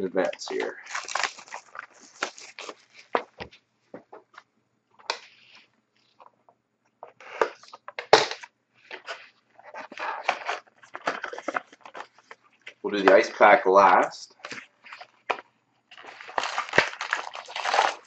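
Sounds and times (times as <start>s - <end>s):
plastic wrap crinkling: 0.0s - 3.6s, 8.8s - 18.0s
cardboard tearing: 0.2s - 3.3s, 9.0s - 12.2s, 16.0s - 18.0s.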